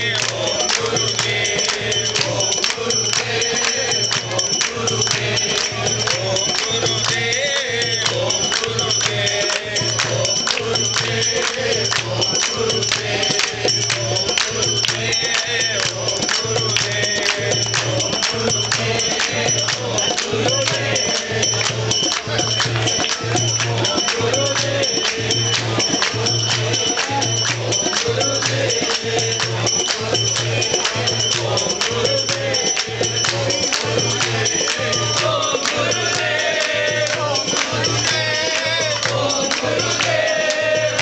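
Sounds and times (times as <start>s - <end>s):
group singing: 0.0s - 41.0s
jingling and clicking percussion: 0.0s - 41.0s.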